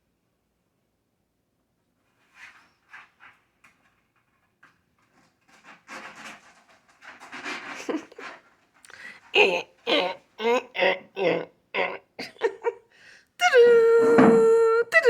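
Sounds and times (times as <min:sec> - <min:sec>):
person panting: 0:08.8 - 0:10.2, 0:12.9 - 0:13.3.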